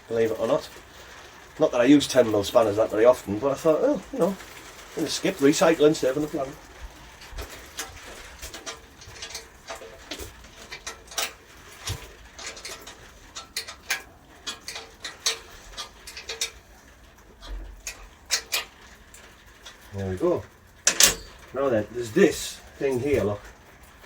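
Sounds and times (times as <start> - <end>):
spanner clicking on metal bolt: 20.8 - 21.4.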